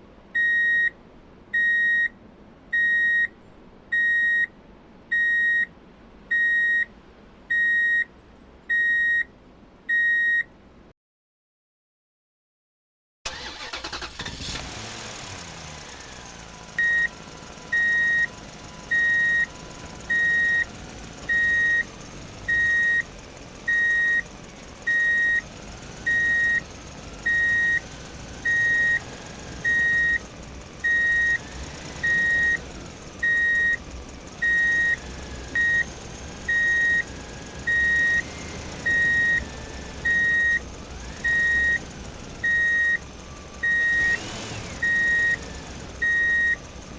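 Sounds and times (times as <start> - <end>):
truck reversing alarm beeping: 0.4 - 1.0, 1.6 - 2.1, 2.8 - 3.3, 3.9 - 4.5, 5.1 - 5.7, 6.3 - 6.9, 7.5 - 8.1, 8.7 - 9.3, 9.9 - 10.5, 13.3 - 14.7, 15.8 - 46.9
vehicle engine running: 13.3 - 46.9.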